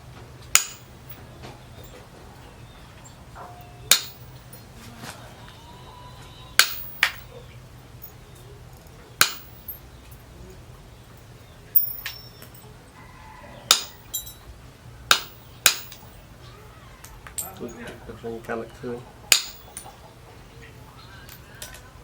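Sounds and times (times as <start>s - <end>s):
metal-on-metal clinks: 0.4s - 4.8s, 6.6s - 10.6s, 11.2s - 14.5s, 15.1s - 16.3s, 17.0s - 18.0s, 19.2s - 20.1s.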